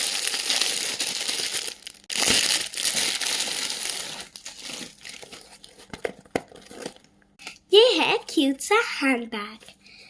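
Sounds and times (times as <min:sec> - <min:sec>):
crinkly packaging rustling: 0:00.0 - 0:07.2.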